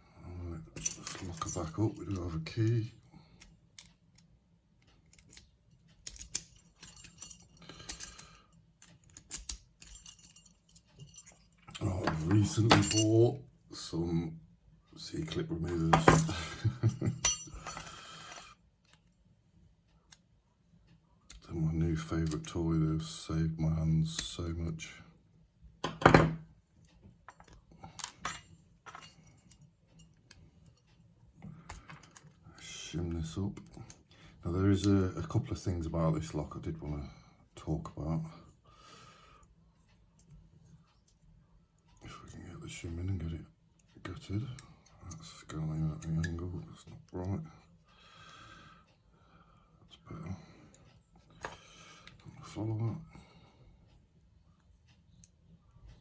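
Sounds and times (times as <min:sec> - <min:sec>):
key jingling against metal lock: 0:15.9 - 0:17.9.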